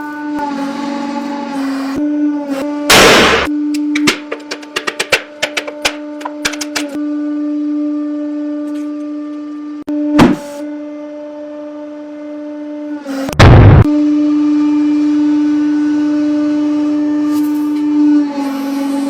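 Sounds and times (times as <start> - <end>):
steady machine hum: 13.4 - 14.0.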